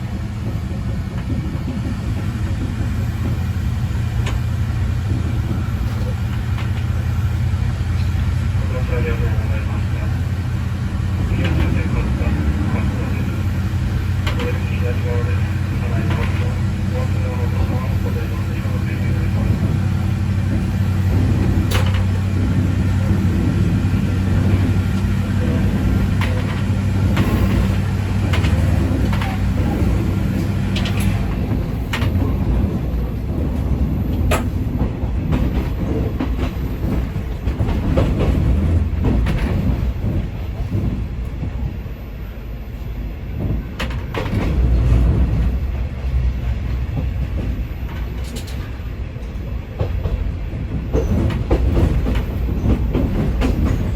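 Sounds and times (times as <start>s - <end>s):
diesel railcar engine: 0.0s - 53.9s
wheels rumbling: 0.0s - 53.9s
clicks over rail joints: 20.5s - 23.5s, 24.3s - 32.4s.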